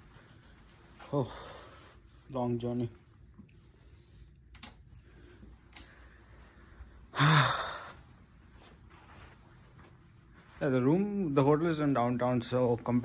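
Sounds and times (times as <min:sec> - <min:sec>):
man sighing loudly: 0:07.1 - 0:08.0.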